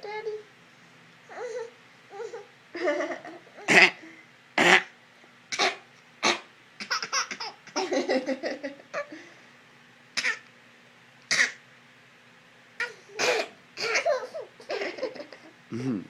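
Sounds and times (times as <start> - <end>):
child fake coughing: 5.6 - 7.5, 10.2 - 10.4, 11.3 - 11.6, 12.8 - 14.4
child laughing: 13.8 - 15.5.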